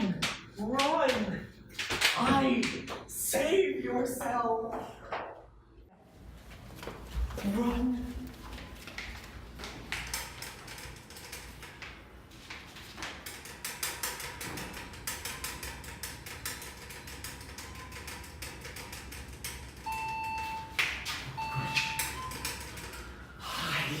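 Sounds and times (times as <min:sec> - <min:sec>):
high beep-like tone: 0:19.9 - 0:22.7.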